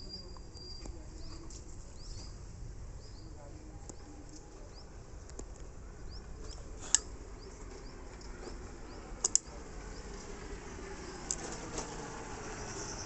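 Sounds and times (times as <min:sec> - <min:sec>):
faint high bird chirps: 0:00.0 - 0:02.4
sharp clicks of splicing gear: 0:06.5 - 0:07.1, 0:09.2 - 0:09.5, 0:11.2 - 0:11.9.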